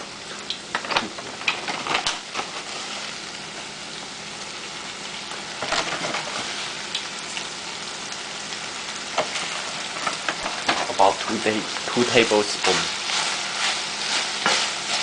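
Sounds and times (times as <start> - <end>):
chicken sizzling in a pan: 0.0 - 15.0
utensil scraping in a pan: 5.6 - 6.8, 9.2 - 15.0.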